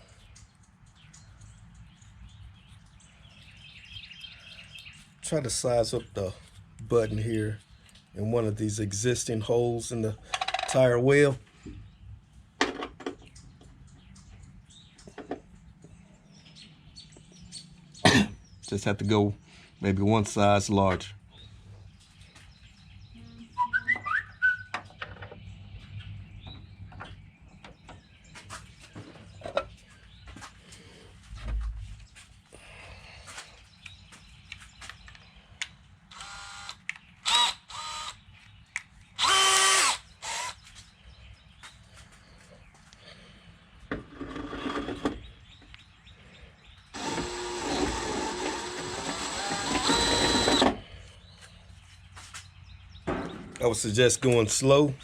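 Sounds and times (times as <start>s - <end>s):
electric drill drilling sheet metal: 36.2s - 38.2s, 39.2s - 40.6s, 47.0s - 50.8s.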